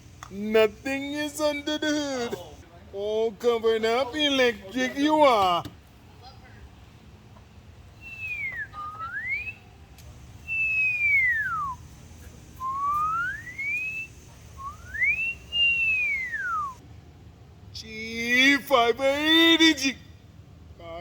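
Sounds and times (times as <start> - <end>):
person whistling pitch slides: 8.0 - 9.6, 10.4 - 11.9, 12.6 - 16.8.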